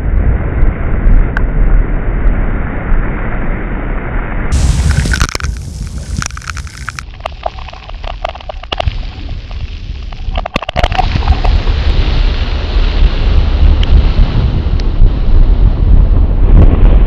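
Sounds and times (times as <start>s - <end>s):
wind buffeting microphone: 4.5s - 17.0s.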